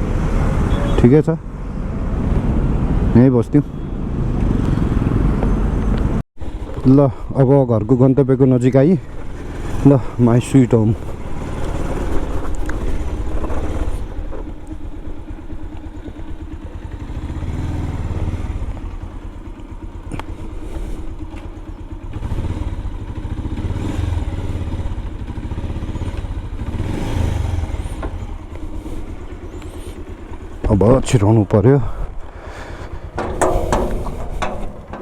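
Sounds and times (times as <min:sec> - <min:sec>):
motorcycle engine revving: 0:09.0 - 0:31.2, 0:32.3 - 0:35.0.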